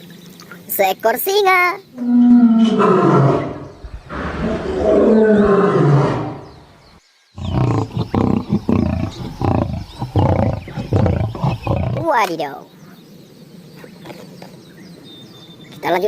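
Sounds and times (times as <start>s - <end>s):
lion roaring: 2.0s - 6.8s, 7.4s - 12.1s.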